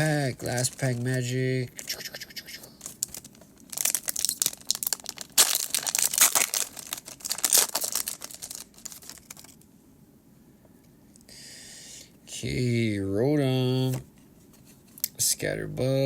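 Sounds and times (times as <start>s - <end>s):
foil wrapper crinkling: 0.2s - 1.9s, 2.8s - 9.6s.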